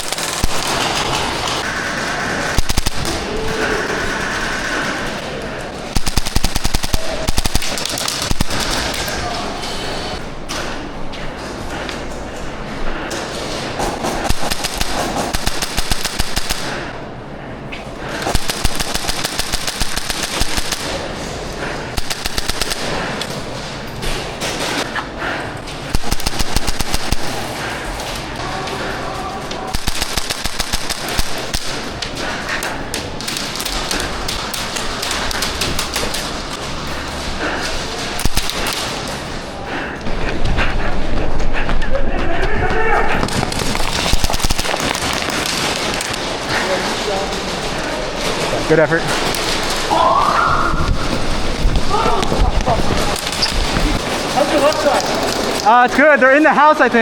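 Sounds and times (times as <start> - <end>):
airsoft guns firing bursts: 0.0 - 5.2, 5.8 - 9.4, 13.8 - 17.0, 18.1 - 23.4, 25.9 - 28.0, 29.7 - 36.6, 38.0 - 39.1, 43.2 - 47.0
bb impacts: 43.1 - 47.5.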